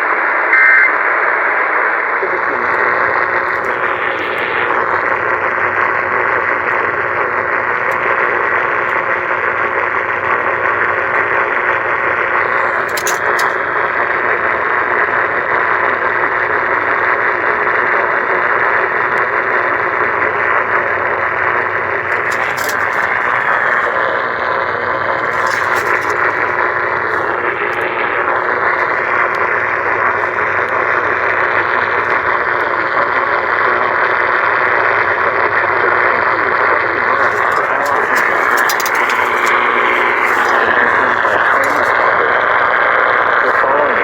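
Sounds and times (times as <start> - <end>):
radio static hiss: 0.0 - 44.0
static crackles: 0.0 - 44.0.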